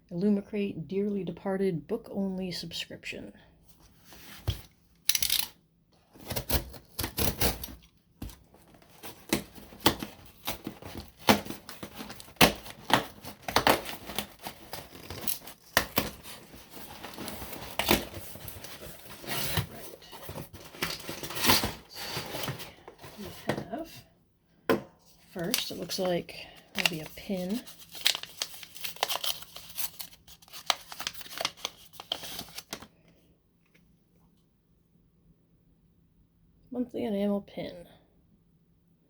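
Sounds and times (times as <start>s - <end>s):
packaging tearing and crinkling: 6.2s - 23.2s, 25.4s - 32.9s.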